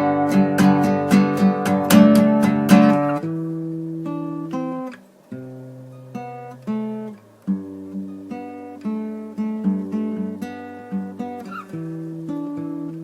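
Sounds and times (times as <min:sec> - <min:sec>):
acoustic guitar picked and strummed: 0:00.0 - 0:13.0.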